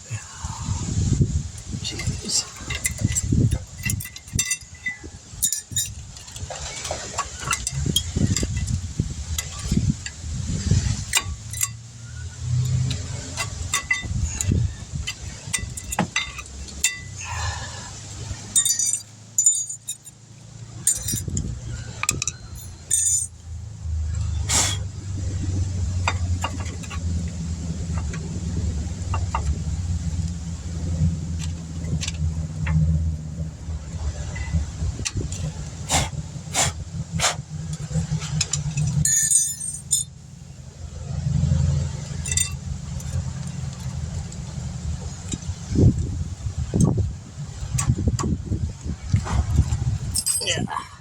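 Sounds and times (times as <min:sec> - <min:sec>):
low background rumble: 0:00.0 - 0:51.0
metal tools clinking: 0:01.6 - 0:23.5, 0:26.0 - 0:28.4, 0:34.1 - 0:40.5, 0:42.0 - 0:45.7, 0:50.0 - 0:50.8.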